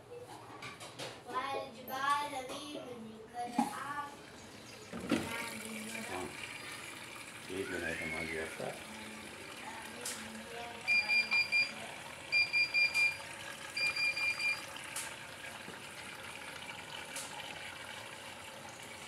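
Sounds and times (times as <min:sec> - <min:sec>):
washing machine high beeps: 0:06.6 - 0:09.6, 0:10.3 - 0:14.9.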